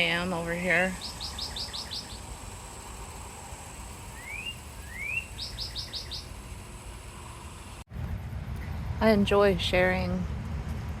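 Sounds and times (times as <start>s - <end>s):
songbird singing: 0.0s - 7.7s.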